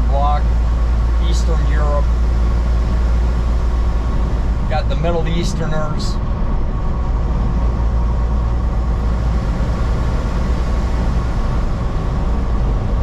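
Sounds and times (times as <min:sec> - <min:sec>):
diesel engine drone: 0:00.0 - 0:13.0.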